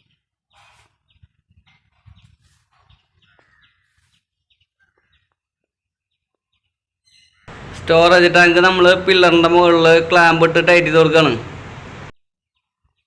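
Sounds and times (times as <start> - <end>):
faint bird chirps: 6.5 - 7.5.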